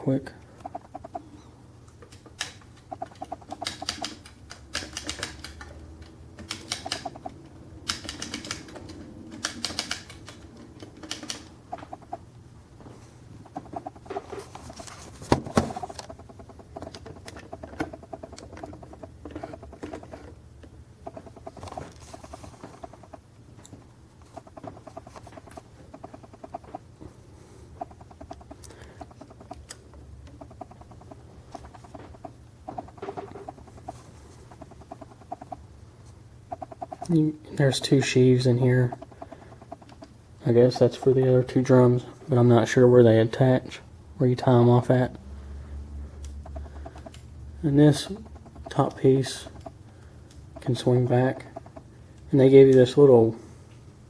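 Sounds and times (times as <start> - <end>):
winch drum rapid clicks: 0.6 - 1.3, 2.4 - 5.7, 6.4 - 12.3, 13.4 - 20.3, 21.0 - 26.9, 27.8 - 35.6, 36.5 - 41.3, 46.2 - 52.8.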